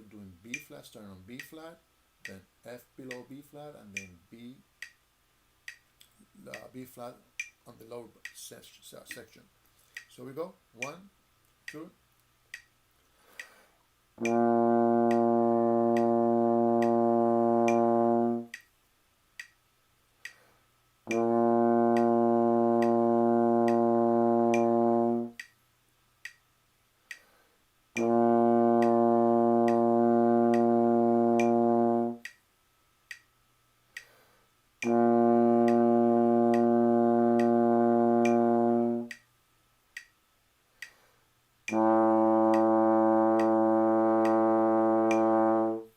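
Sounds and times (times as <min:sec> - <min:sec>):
metronome clicking: 0:01.3 - 0:01.6, 0:02.2 - 0:02.4, 0:03.1 - 0:04.2, 0:04.8 - 0:05.0, 0:05.6 - 0:06.7, 0:07.4 - 0:07.6, 0:10.8 - 0:11.0, 0:11.6 - 0:11.9, 0:12.5 - 0:13.6, 0:14.2 - 0:18.8, 0:19.4 - 0:19.6, 0:20.2 - 0:20.5, 0:21.1 - 0:25.6, 0:26.2 - 0:26.5, 0:27.1 - 0:33.3, 0:34.0 - 0:34.2, 0:34.8 - 0:39.3, 0:39.9 - 0:40.2, 0:40.8 - 0:45.8
trombone long notes: 0:14.2 - 0:18.5, 0:21.0 - 0:25.4, 0:28.0 - 0:32.3, 0:34.8 - 0:39.2, 0:41.7 - 0:45.9.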